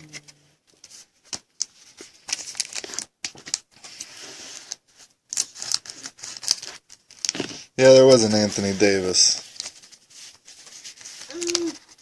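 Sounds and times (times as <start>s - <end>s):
plastic packaging crinkling: 1.3s - 12.0s.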